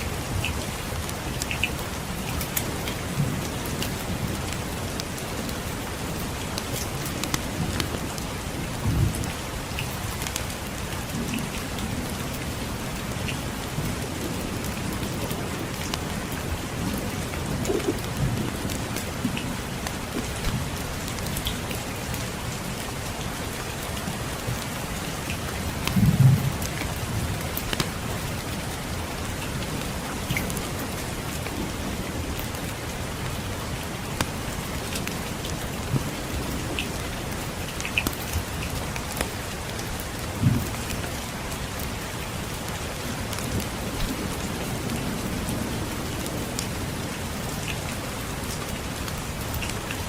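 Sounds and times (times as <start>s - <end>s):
steady rain: 0.0s - 50.0s
small crackles and ticks: 0.3s - 5.3s, 6.1s - 22.9s, 23.5s - 28.2s, 29.4s - 30.6s, 34.1s - 41.8s, 48.6s - 50.0s.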